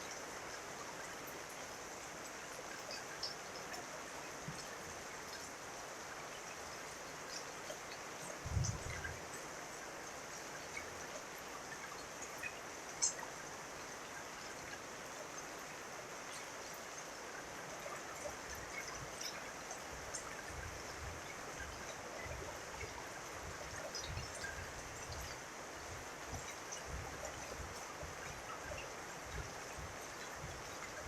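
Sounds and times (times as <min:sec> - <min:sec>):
drip ticks: 0:00.0 - 0:05.6, 0:06.3 - 0:31.0
steady rain: 0:00.0 - 0:31.0.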